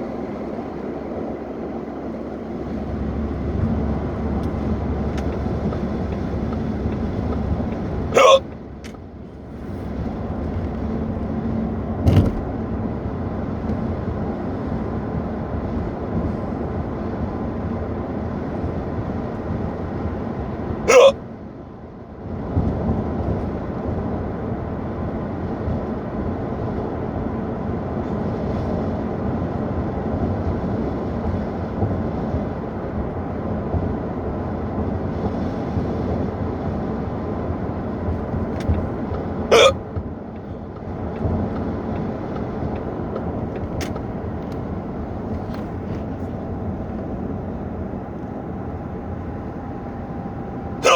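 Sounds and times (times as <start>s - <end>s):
road and engine noise in car: 0.0s - 50.9s
person hiccuping: 8.2s - 8.5s, 20.9s - 21.2s, 39.5s - 39.8s.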